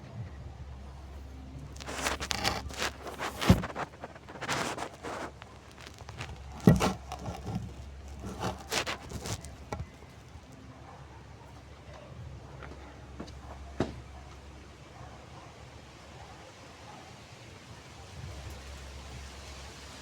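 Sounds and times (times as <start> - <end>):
wood scraping and rustling: 1.0 - 10.4
wood thumps: 1.7 - 10.1.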